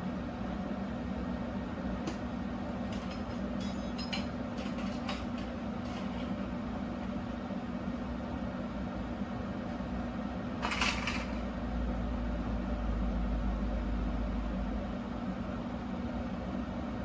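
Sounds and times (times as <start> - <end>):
low mechanical hum: 0.0 - 17.0
tools clinking on metal: 3.0 - 5.2.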